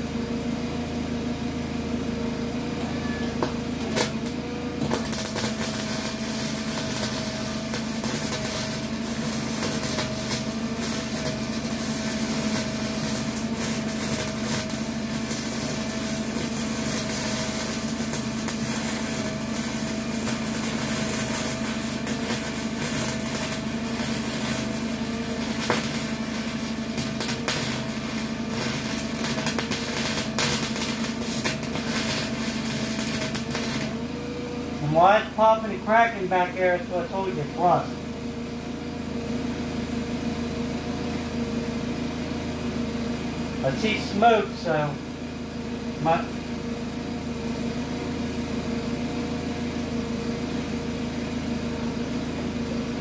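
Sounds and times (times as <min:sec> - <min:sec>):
steady hum: 0:02.2 - 0:39.2, 0:42.9 - 0:47.7
welding arc crackling and popping: 0:02.4 - 0:41.6, 0:43.0 - 0:53.0.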